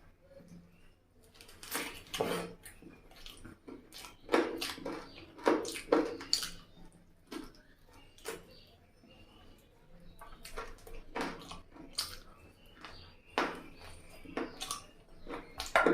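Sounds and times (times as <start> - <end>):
wet chewing and mouth smacking: 1.2 - 8.7, 10.0 - 15.9.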